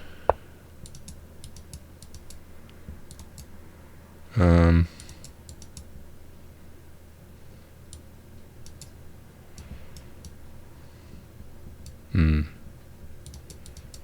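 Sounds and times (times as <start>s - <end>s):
person grunting: 4.3s - 5.0s, 12.1s - 12.6s
mouse or keyboard clicks: 13.3s - 14.0s.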